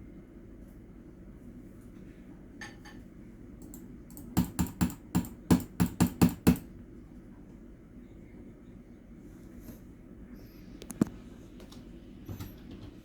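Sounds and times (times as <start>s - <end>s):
computer keyboard keystrokes: 3.6s - 6.7s.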